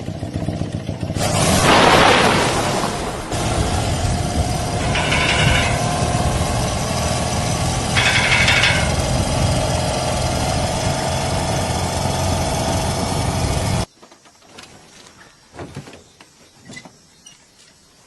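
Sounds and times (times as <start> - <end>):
motorcycle engine running: 0.0 - 1.7, 3.3 - 13.9.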